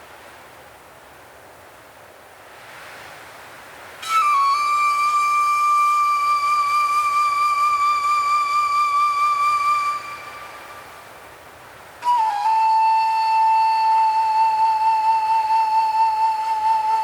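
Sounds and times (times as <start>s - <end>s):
soft wind-like hiss: 0.0s - 17.0s
long flute note: 4.0s - 11.2s, 12.0s - 17.0s.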